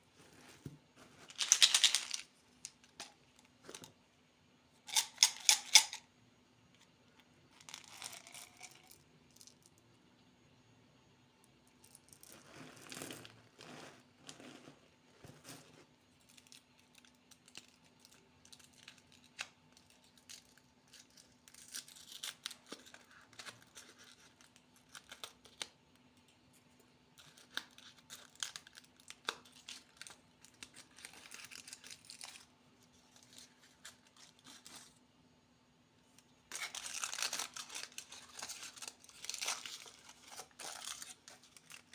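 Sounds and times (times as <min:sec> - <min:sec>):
faint low hum: 0:00.0 - 0:41.9
plastic wrappers tearing and crinkling: 0:01.3 - 0:02.3, 0:16.4 - 0:25.7, 0:27.3 - 0:32.5, 0:36.5 - 0:41.9.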